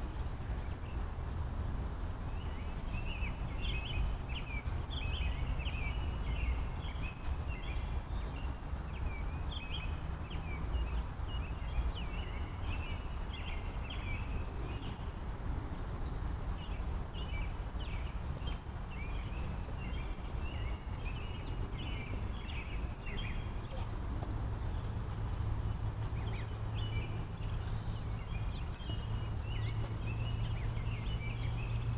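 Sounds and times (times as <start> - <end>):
birds chirping: 16.0 - 24.0, 24.6 - 31.9.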